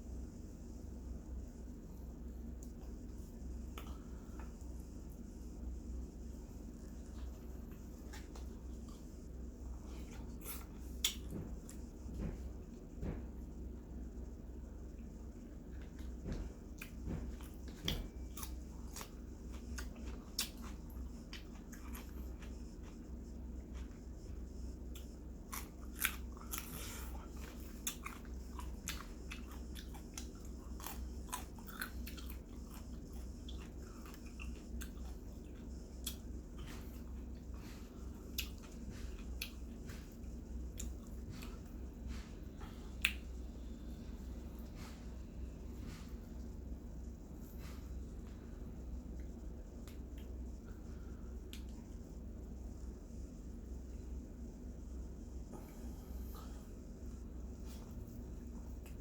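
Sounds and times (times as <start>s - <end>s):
steady low hum: 0.0s - 59.0s
person chewing and crunching: 9.8s - 11.8s, 15.7s - 24.0s, 24.9s - 41.8s.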